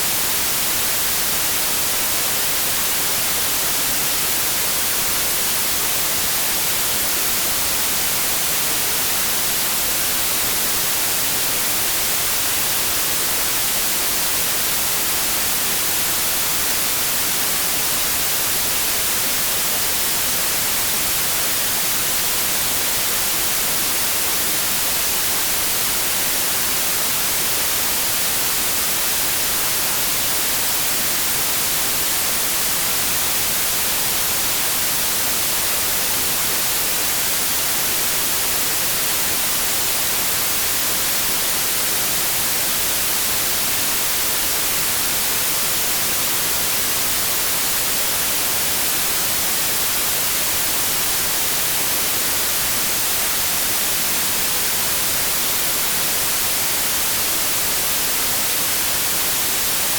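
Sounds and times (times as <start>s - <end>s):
white noise hiss: 0.0s - 59.9s.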